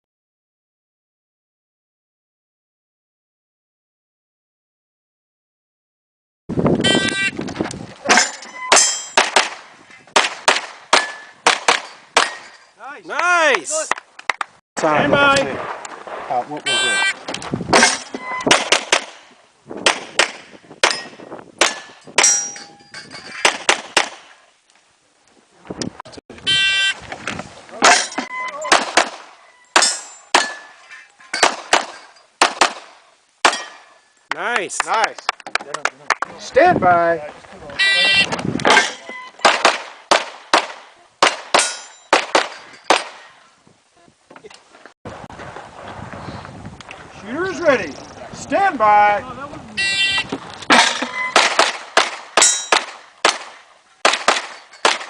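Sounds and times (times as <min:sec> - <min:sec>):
steel targets clanging: 0:08.0 - 0:09.6, 0:10.9 - 0:12.9, 0:17.7 - 0:19.0, 0:20.8 - 0:23.7, 0:27.8 - 0:32.3, 0:33.4 - 0:34.3, 0:38.7 - 0:39.7, 0:41.5 - 0:43.3, 0:50.7 - 0:51.8, 0:52.4 - 0:52.9, 0:54.0 - 0:55.0.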